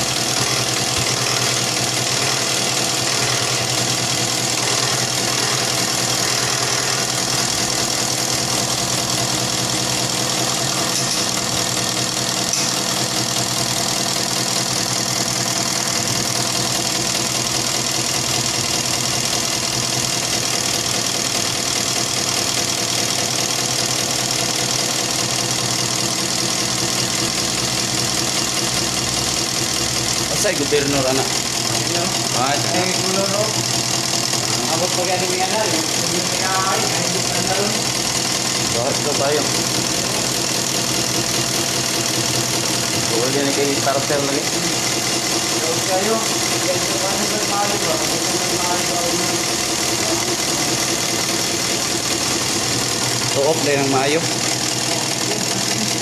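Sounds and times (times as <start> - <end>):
diesel engine idling: 0.0 - 56.0.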